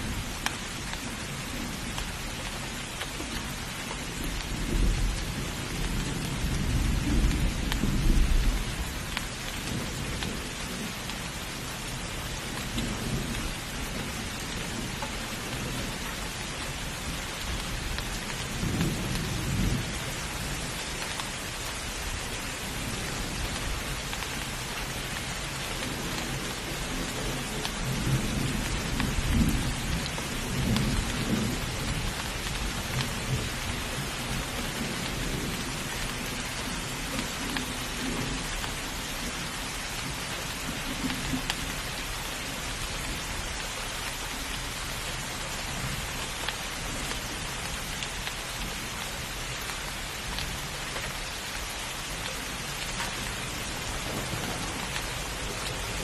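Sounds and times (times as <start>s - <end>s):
heavy rain hissing: 0.0s - 56.0s
thunder rumbling: 52.9s - 56.0s.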